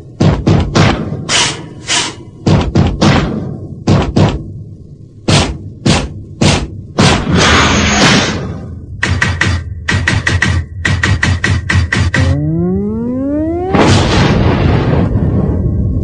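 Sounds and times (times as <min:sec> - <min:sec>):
drum hits: 0:00.1 - 0:01.5, 0:02.4 - 0:04.6, 0:05.3 - 0:07.3, 0:09.0 - 0:12.4.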